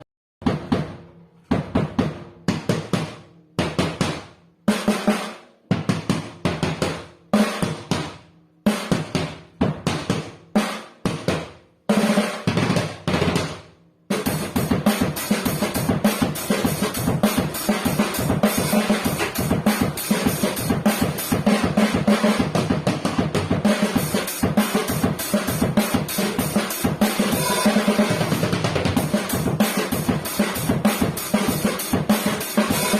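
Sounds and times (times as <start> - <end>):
drum kit quick strokes: 14.1 - 32.9.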